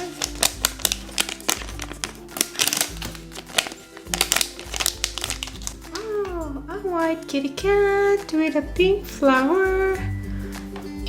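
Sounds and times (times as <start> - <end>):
foil packaging crinkling: 0.0 - 6.5.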